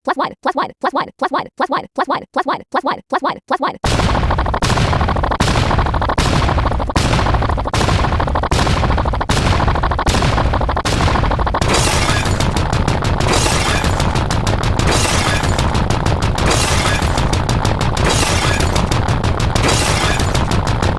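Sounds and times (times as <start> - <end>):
harsh noisy sound effect: 3.8 - 20.9.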